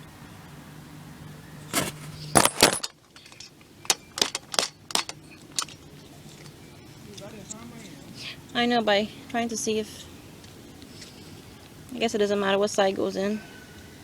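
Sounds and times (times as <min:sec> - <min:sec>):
metal hardware clinking: 0:01.7 - 0:08.0.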